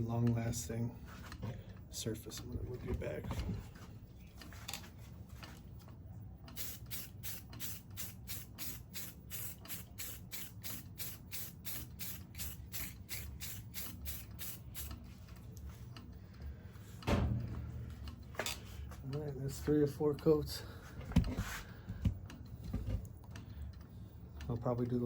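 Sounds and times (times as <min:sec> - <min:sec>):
aerosol spray hisses: 0:06.6 - 0:14.9.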